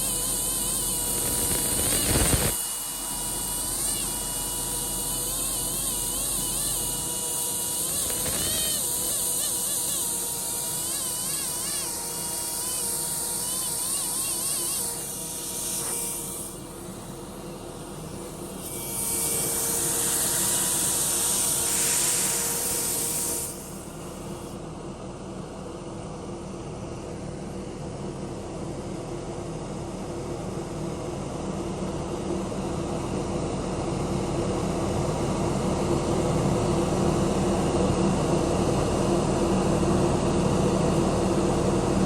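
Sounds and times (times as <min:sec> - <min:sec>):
air tool hissing and whining: 0:00.0 - 0:24.6.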